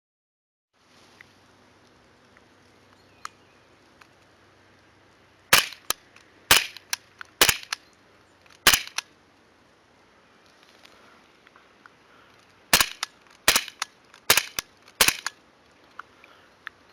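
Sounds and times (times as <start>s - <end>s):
airsoft pistol shots: 5.5s - 7.8s, 8.6s - 9.0s, 12.7s - 15.4s.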